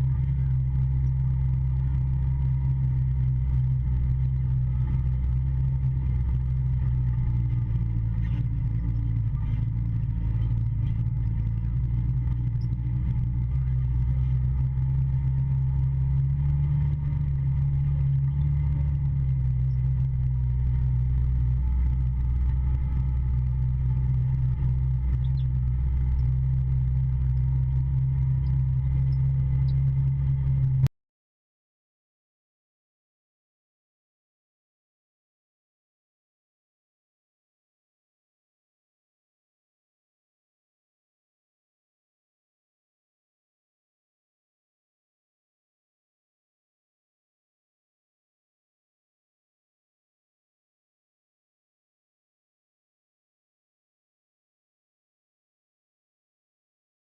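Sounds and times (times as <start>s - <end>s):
vehicle engine low drone: 0.0s - 30.9s.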